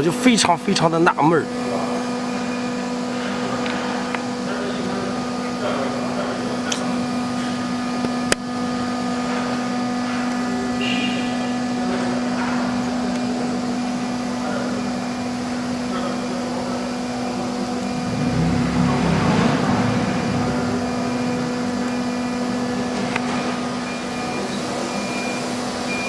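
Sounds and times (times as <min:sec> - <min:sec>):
low machine rumble: 0:15.2 - 0:24.4
router machine humming: 0:16.8 - 0:24.2.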